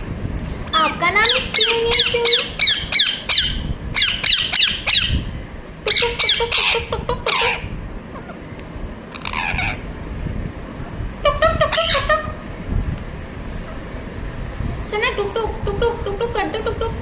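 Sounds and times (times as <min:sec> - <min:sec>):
parrot chirping: 0:00.7 - 0:05.3, 0:05.9 - 0:08.4, 0:09.2 - 0:09.8, 0:11.6 - 0:12.4.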